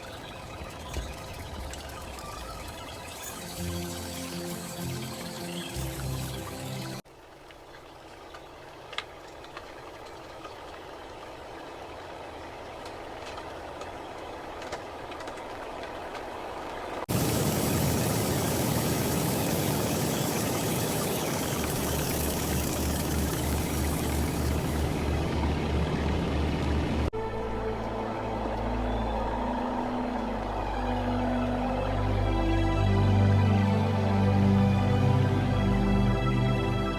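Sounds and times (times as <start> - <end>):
machine running: 0.0 - 7.0, 17.1 - 27.1
low pulsing hum: 17.1 - 36.9.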